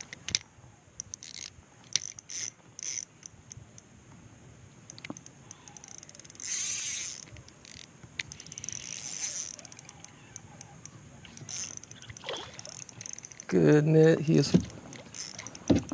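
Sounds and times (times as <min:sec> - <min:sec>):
fishing reel ratcheting: 0:01.0 - 0:03.4, 0:04.9 - 0:10.7, 0:11.3 - 0:13.6, 0:14.9 - 0:15.9.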